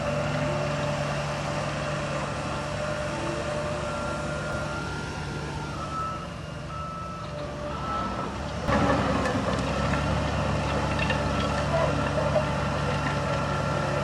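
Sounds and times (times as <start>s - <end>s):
diesel engine drone: 0.0s - 14.0s
reversing alarm beeping: 2.8s - 8.4s.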